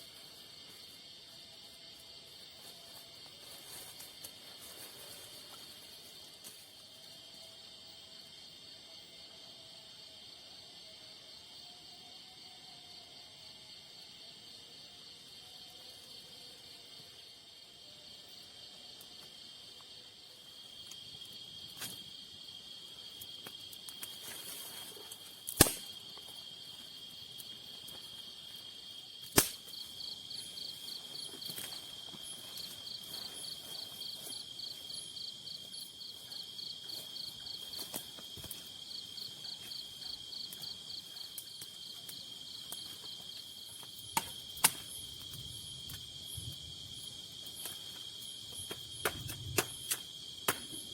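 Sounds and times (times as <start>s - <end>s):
crickets trilling: 0.0s - 50.9s
sharp cracks: 25.5s - 26.0s, 29.2s - 29.8s.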